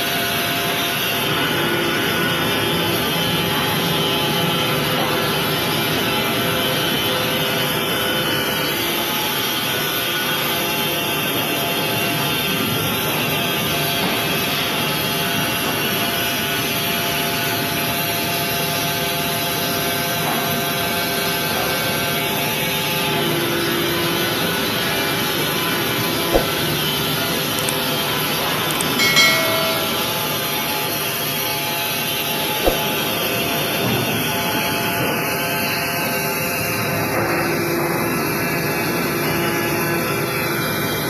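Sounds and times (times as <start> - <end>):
sharp knock: 29.0 - 30.2, 32.6 - 33.0.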